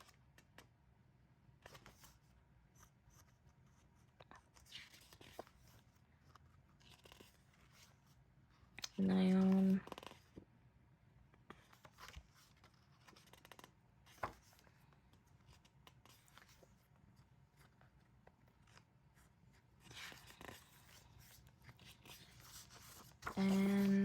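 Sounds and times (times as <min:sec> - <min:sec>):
paper pages rustling: 0:01.6 - 0:08.2, 0:11.5 - 0:24.0
page turning ticks: 0:08.8 - 0:09.1.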